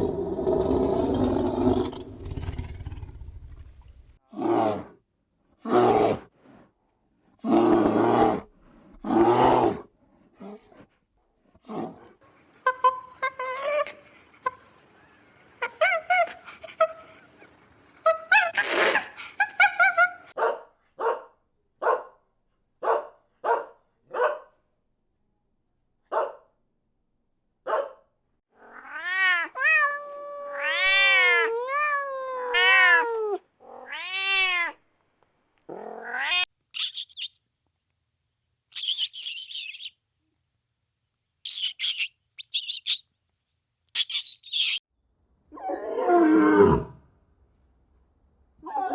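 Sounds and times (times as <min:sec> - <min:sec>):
cat meowing: 0:28.6 - 0:34.8, 0:35.9 - 0:36.5
high chirps: 0:36.8 - 0:37.4, 0:38.8 - 0:40.0, 0:41.5 - 0:43.0, 0:43.9 - 0:44.8.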